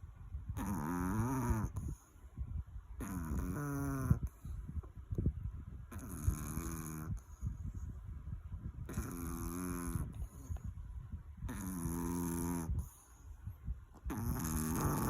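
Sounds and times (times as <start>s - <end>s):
dog snoring: 0.6s - 2.0s, 3.0s - 4.4s, 5.9s - 7.5s, 8.8s - 10.7s, 11.5s - 13.2s, 14.0s - 15.0s.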